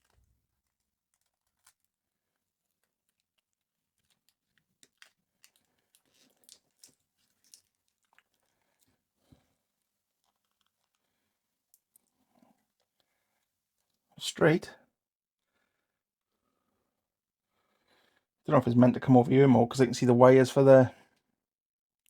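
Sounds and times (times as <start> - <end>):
tape crinkling and tearing: 0.0 - 2.0, 2.7 - 8.5
small clicks of parts handled: 2.8 - 8.9, 10.2 - 11.0.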